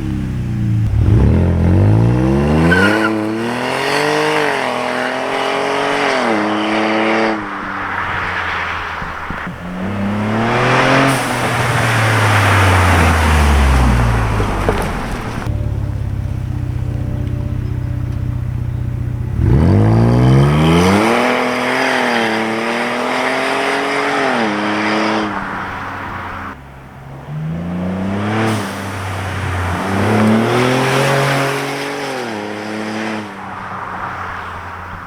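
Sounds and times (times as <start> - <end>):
car engine revving: 0.0 - 35.0
engine idling: 9.0 - 20.6.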